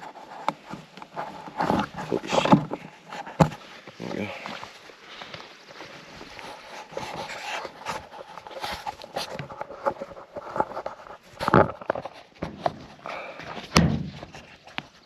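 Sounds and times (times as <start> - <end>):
footsteps: 0.0 - 15.0
handling knocks on camera: 13.6 - 14.4
loud thumps: 13.7 - 14.3.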